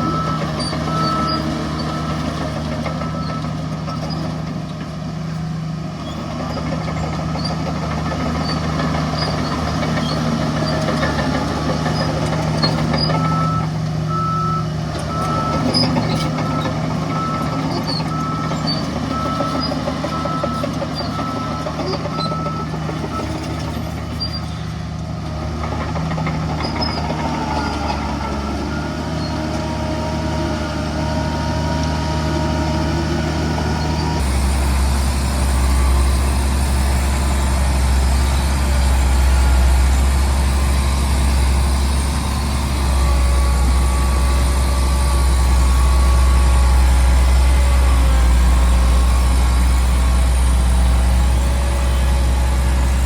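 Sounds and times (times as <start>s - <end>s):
reversing alarm beeping: 0.0s - 4.2s, 11.5s - 24.6s, 26.5s - 30.6s, 32.3s - 53.0s
heavy diesel machinery running: 0.0s - 53.0s.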